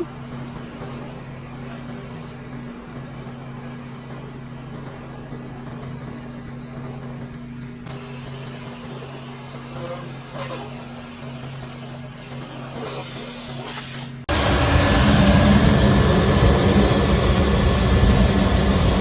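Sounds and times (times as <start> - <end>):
motor humming: 14.3 - 19.0
rush of air: 14.3 - 19.0.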